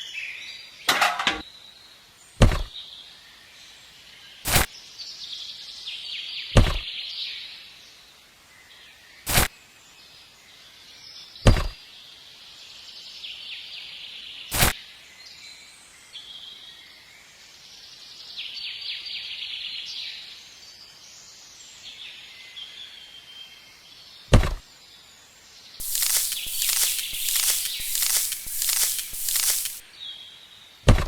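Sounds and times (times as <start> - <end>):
sharp knocks: 2.4 - 2.7, 24.3 - 24.6.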